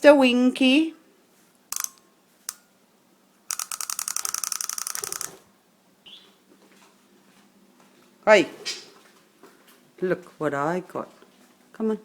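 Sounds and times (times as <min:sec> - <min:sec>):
wind-up toy clockwork clicking: 0:01.7 - 0:02.6, 0:03.5 - 0:05.4.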